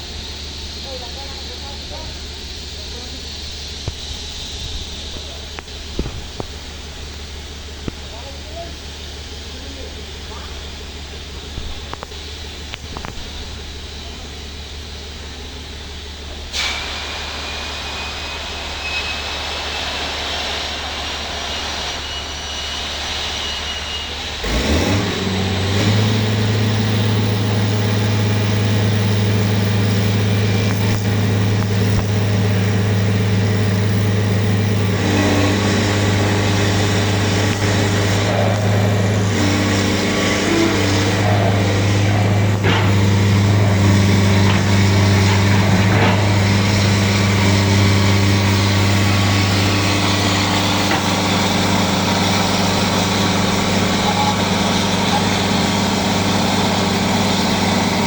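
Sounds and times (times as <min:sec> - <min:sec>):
engine humming steadily: 0:00.0 - 0:58.0
rough noisy engine layer: 0:00.0 - 0:58.0.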